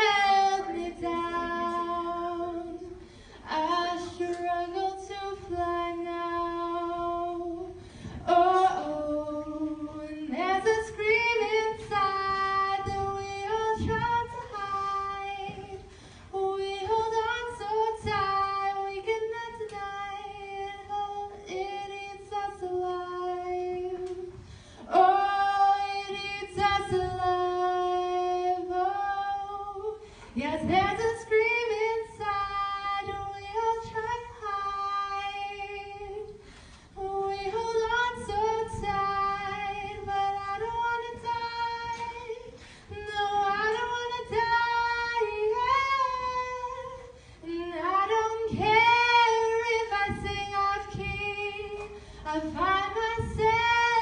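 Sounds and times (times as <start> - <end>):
woman singing a cappella: 0.0 - 54.0.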